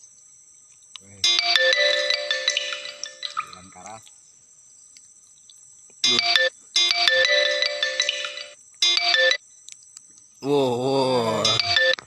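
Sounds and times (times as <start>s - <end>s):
electronic phone ringtone melody: 1.2s - 3.6s, 6.0s - 9.4s, 11.4s - 12.0s.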